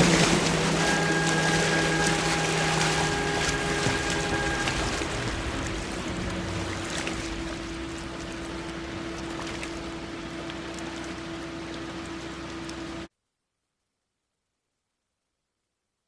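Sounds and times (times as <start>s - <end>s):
mechanical hum: 0.0s - 13.1s
small ticks and splashes: 0.0s - 13.1s
water rushing: 0.0s - 13.1s.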